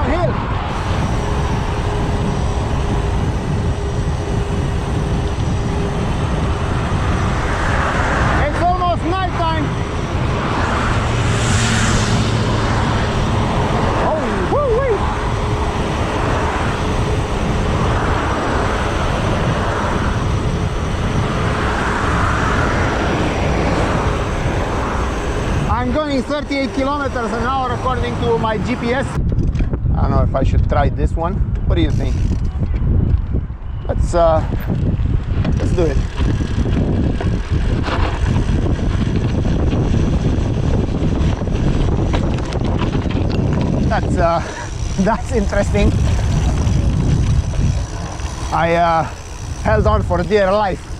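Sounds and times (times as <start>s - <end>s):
bike tyre noise: 0.0s - 29.8s, 31.4s - 50.9s
wind buffeting microphone: 0.0s - 50.9s.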